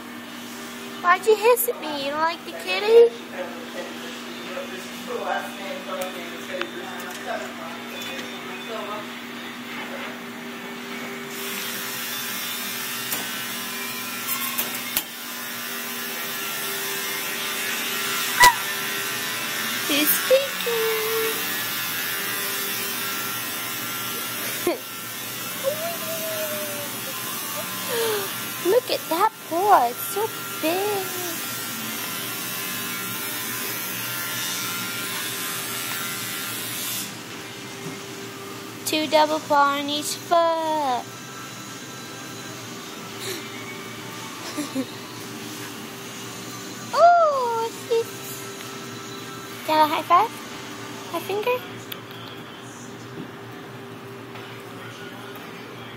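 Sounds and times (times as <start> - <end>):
small electric motor whirring: 11.3 - 37.2
short squeak: 18.4 - 18.7.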